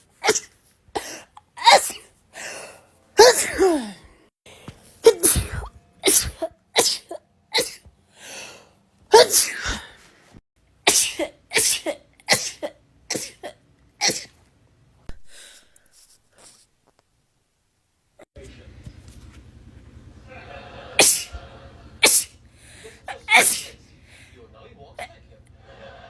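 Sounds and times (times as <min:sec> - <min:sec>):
woman sneezing: 0:00.2 - 0:02.1, 0:03.2 - 0:04.1, 0:05.0 - 0:07.8, 0:09.1 - 0:10.0, 0:23.1 - 0:23.8.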